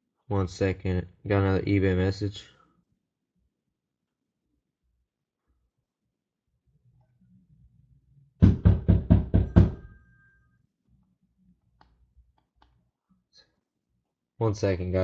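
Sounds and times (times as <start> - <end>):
knocking on a door: 8.4 - 9.9.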